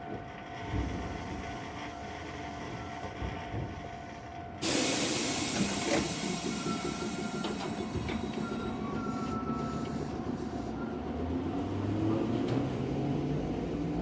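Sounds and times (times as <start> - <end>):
electric train humming: 0.0 - 14.0
compressed air hissing: 4.6 - 8.0.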